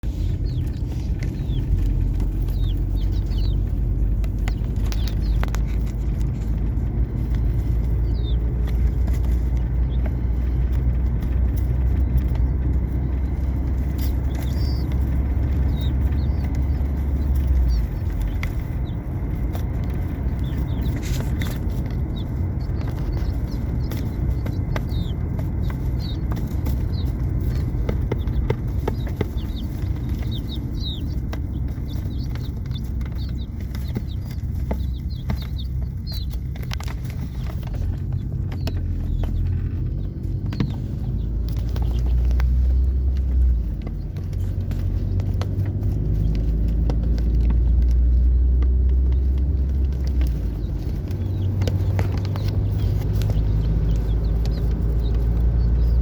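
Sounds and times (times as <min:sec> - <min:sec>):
chicks peeping and chirping: 0:00.0 - 0:56.0
steady low rumble: 0:00.0 - 0:56.0.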